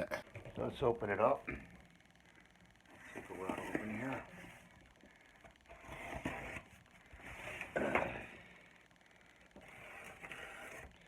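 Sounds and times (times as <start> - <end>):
cardboard box rustling and scraping: 9.7 - 11.0.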